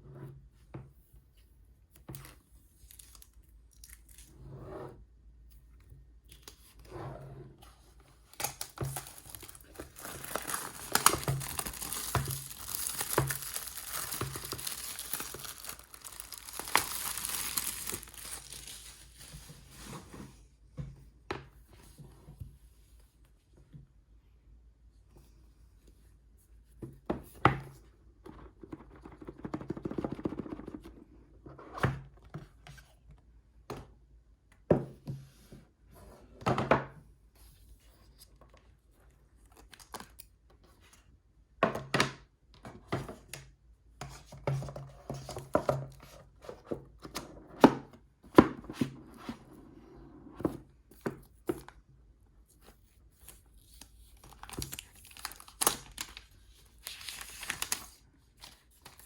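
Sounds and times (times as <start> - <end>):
packaging thunks and knocks: 8.5 - 18.7
cardboard scraping and tearing: 8.5 - 19.2.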